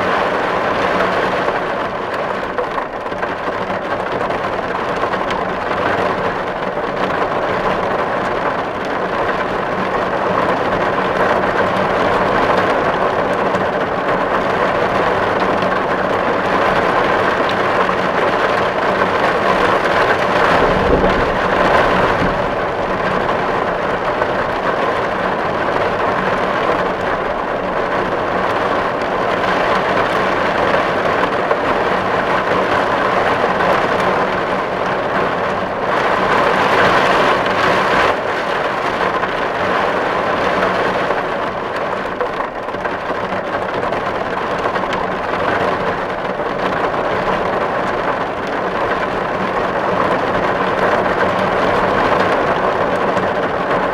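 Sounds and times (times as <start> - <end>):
rain on a tin roof: 0.0 - 53.9
low rumble: 19.6 - 25.2.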